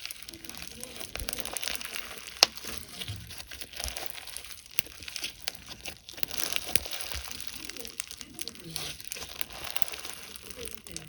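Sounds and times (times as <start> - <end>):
slime squishing and crackling: 0.0 - 11.0.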